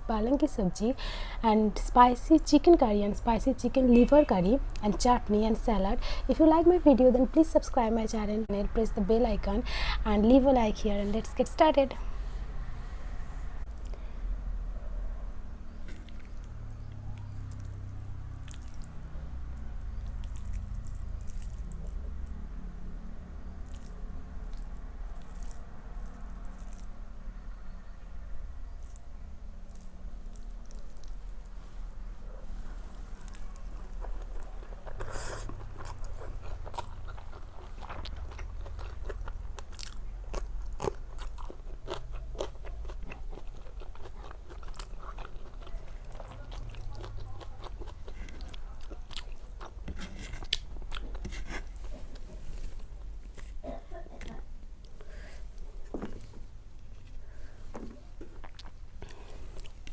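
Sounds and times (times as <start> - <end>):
person chewing crunchy food: 15.7 - 22.4, 23.5 - 27.0, 28.7 - 31.6, 32.6 - 53.6, 56.1 - 59.9
wet eating squishes: 15.8 - 22.4, 23.6 - 27.0, 28.8 - 31.6
small eating clicks: 15.9 - 22.4, 23.6 - 27.0, 33.2 - 51.4.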